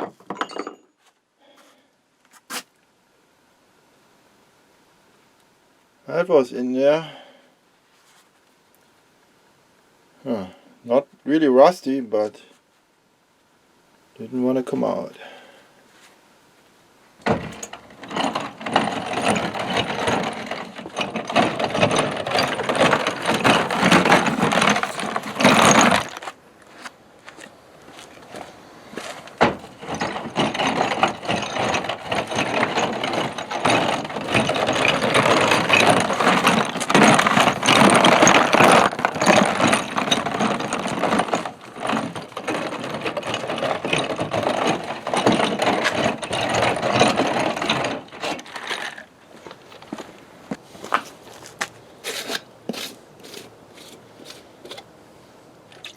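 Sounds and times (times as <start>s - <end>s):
wire wheel scratching metal: 17.3s - 26.3s, 29.5s - 48.9s.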